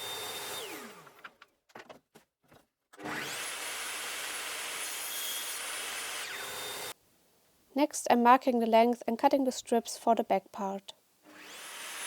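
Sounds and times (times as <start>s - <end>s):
electric saw motor: 0.0s - 1.2s, 3.0s - 7.0s, 11.3s - 12.0s
knocks of wood being handled: 1.4s - 2.8s.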